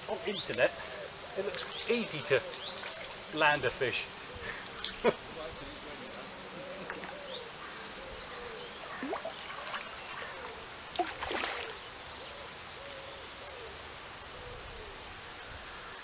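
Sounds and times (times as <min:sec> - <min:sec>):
bird cooing: 0:00.1 - 0:03.4, 0:04.1 - 0:10.8, 0:11.6 - 0:13.8.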